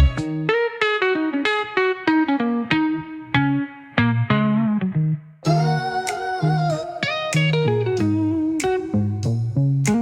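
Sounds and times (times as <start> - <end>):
hip-hop instrumental music: 0.0 - 0.6, 5.5 - 10.0
guitar picking single notes: 0.0 - 10.0.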